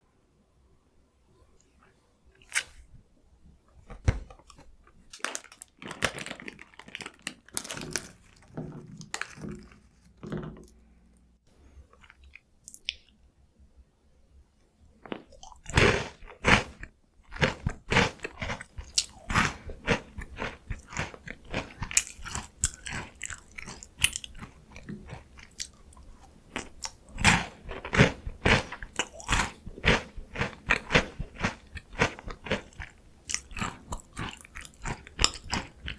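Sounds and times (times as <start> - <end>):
crunchy chewing: 15.0 - 35.9.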